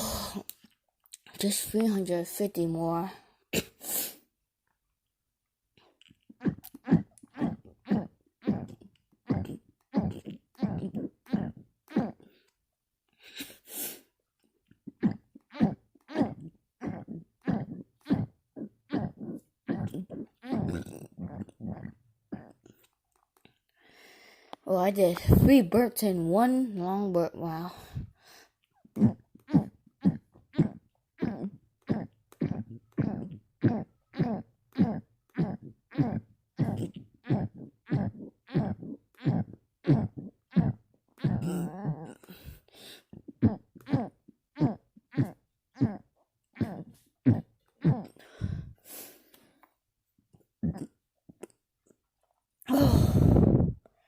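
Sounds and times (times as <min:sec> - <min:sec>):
person burping: 0:06.3 - 0:12.3, 0:14.9 - 0:22.7, 0:29.0 - 0:42.6, 0:43.3 - 0:48.8, 0:50.6 - 0:51.0, 0:52.7 - 0:53.8.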